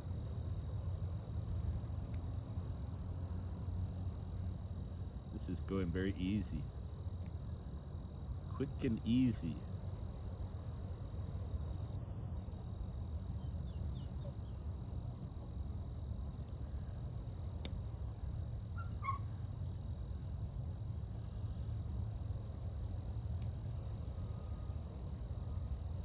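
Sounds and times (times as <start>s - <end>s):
insect trilling: 18.6s - 19.7s.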